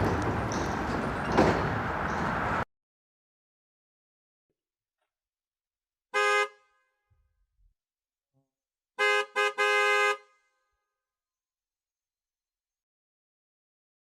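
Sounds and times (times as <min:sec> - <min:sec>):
car horn honking: 0:06.1 - 0:06.8, 0:09.0 - 0:10.6.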